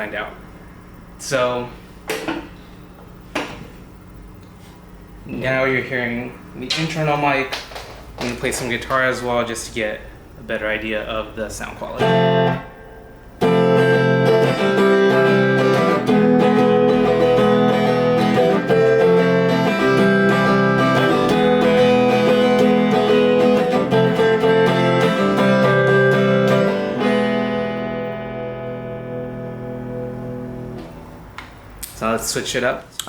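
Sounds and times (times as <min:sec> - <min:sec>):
guitar chord strumming: 0:11.9 - 0:31.4.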